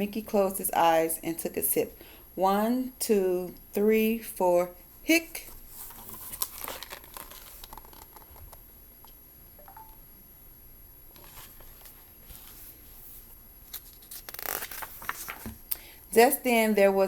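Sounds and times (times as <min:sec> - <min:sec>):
paper rustling: 0:05.5 - 0:08.4, 0:11.2 - 0:15.6.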